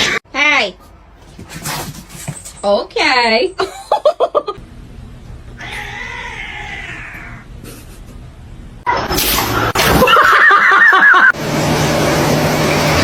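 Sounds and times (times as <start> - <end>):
cat meowing: 5.6 - 7.4
cat yowling: 5.6 - 7.4.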